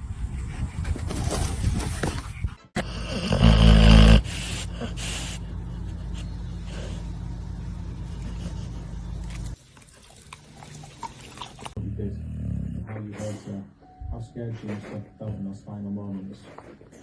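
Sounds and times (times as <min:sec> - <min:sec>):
low hum: 0:04.2 - 0:09.6.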